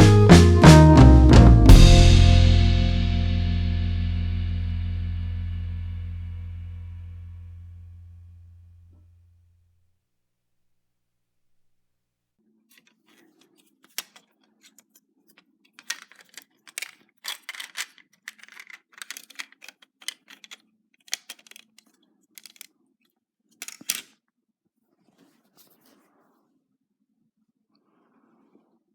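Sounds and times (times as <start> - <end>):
clicks of small parts handled: 13.9 - 14.3, 15.8 - 22.7, 23.6 - 24.2.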